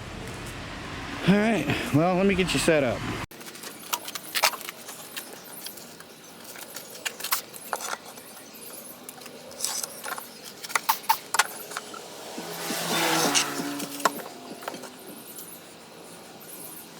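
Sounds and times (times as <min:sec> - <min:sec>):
objects clicking and rattling: 0:03.3 - 0:15.5.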